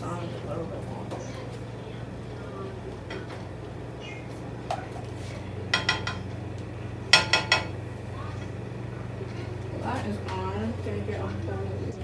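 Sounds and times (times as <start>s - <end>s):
steady low hum: 0.0s - 12.0s
metal utensils clinking on cookware: 5.7s - 6.3s, 7.1s - 7.8s.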